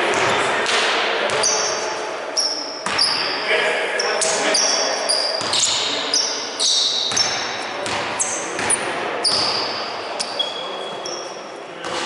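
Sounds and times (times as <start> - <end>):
basketball bouncing: 0.0 - 1.6, 2.8 - 3.2, 5.4 - 5.8, 7.0 - 10.3
shoe squeaks on court floor: 1.4 - 3.4, 4.0 - 12.0.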